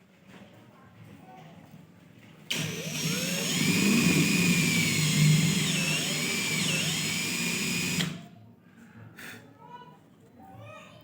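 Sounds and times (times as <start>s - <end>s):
electric power tool running: 2.5s - 8.2s.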